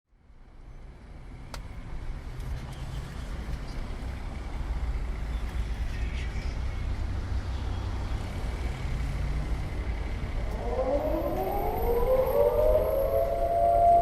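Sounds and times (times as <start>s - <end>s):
air raid siren winding up: 10.4s - 14.0s.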